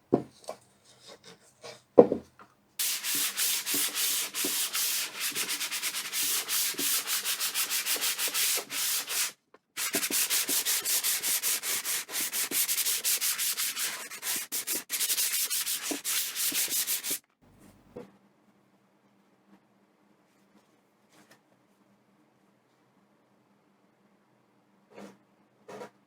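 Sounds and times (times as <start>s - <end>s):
sandpaper rubbing on wood: 2.8s - 17.2s.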